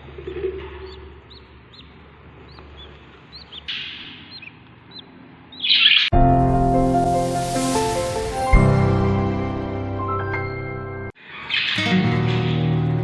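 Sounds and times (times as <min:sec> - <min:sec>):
budgies chirping: 0:00.3 - 0:06.1
harsh rasping bird calls: 0:00.8 - 0:06.1.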